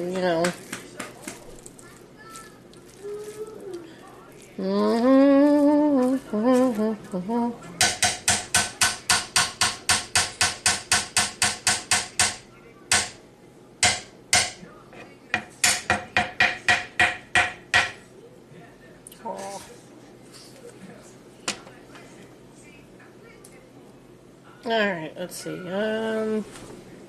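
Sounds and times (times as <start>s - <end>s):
person humming or singing: 4.6s - 7.7s.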